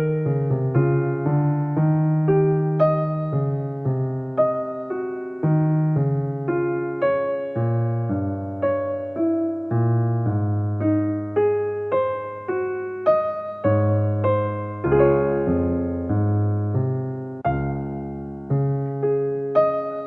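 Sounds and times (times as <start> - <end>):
slow electric piano notes: 0.0 - 20.0.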